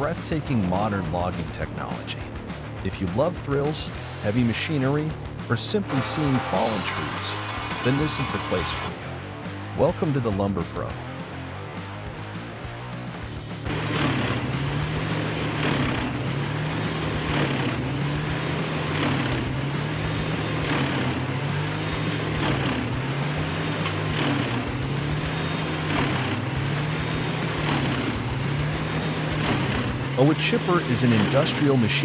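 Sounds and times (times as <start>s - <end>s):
engine running cyclically: 5.8s - 9.9s, 13.6s - 32.0s.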